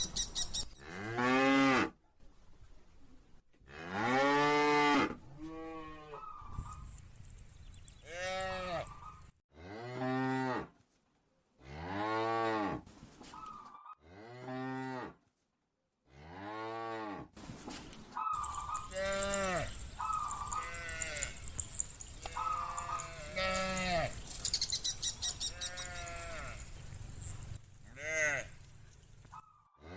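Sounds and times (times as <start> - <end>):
cattle mooing: 8.1 - 9.0, 18.4 - 28.7.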